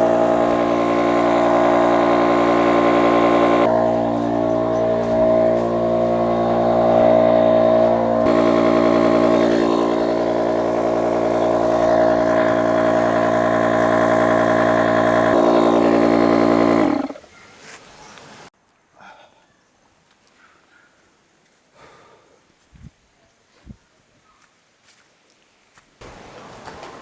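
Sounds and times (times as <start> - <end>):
motor humming: 0.0 - 17.2.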